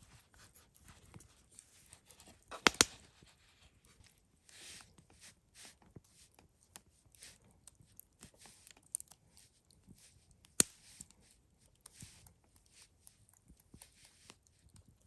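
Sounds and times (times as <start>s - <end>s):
sharp click: 2.6s - 3.0s.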